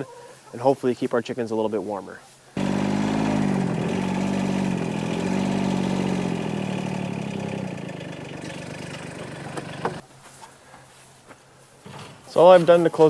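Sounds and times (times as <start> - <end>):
engine idling: 2.6 - 10.0.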